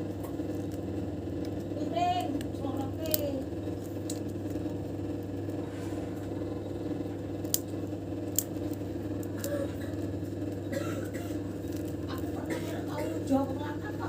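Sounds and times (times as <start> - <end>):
low mechanical hum: 0.0 - 14.0.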